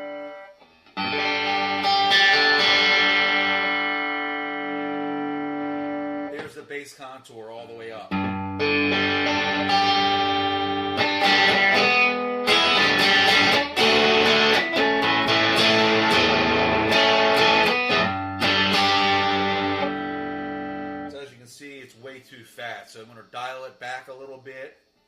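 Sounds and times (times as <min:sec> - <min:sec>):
distorted electric guitar chords: 0:00.0 - 0:06.6, 0:08.1 - 0:21.2.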